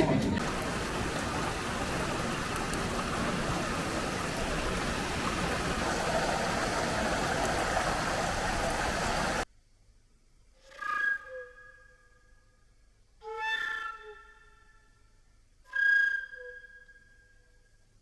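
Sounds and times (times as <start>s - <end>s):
steady rushing noise: 0.4s - 9.5s.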